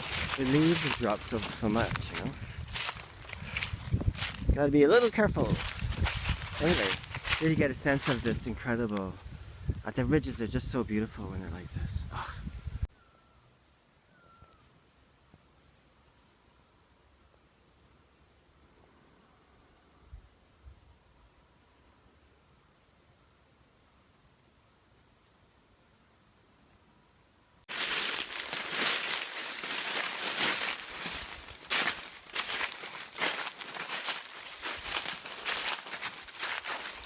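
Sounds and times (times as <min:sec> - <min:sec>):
high-pitched insect buzz: 0:00.0 - 0:08.2, 0:12.4 - 0:37.0
footsteps crunching through dry leaves: 0:00.0 - 0:08.5, 0:27.7 - 0:37.0.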